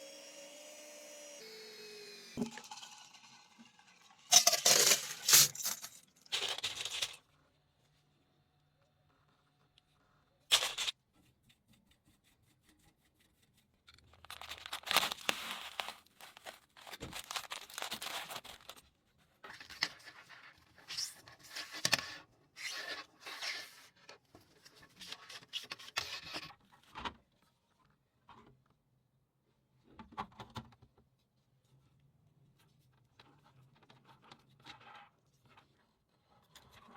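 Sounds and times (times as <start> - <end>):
rustling and scraping handling noises: 4.3 - 8.1, 9.1 - 28.8, 31.0 - 36.9.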